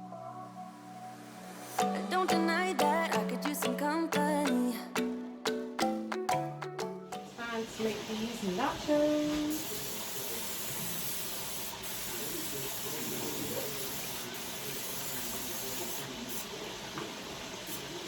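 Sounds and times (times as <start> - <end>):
steady hissing noise: 7.2 - 16.6.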